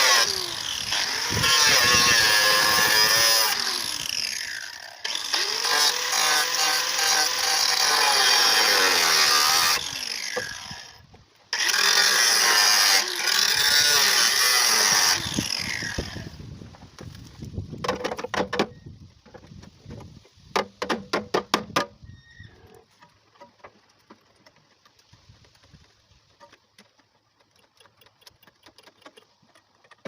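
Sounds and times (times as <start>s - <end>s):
power tool working on metal: 0.0s - 11.0s, 11.6s - 16.3s.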